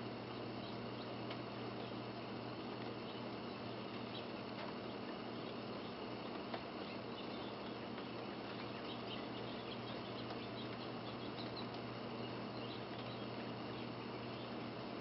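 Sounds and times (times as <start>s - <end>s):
low steady hum: 0.0s - 15.0s.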